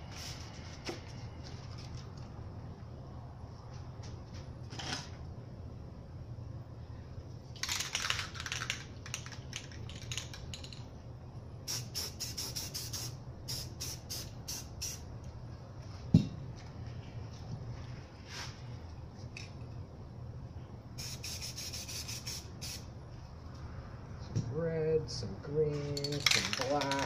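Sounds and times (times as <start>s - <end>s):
steady low hum: 0.0s - 27.0s
spray can hissing: 11.7s - 15.1s, 21.0s - 22.9s.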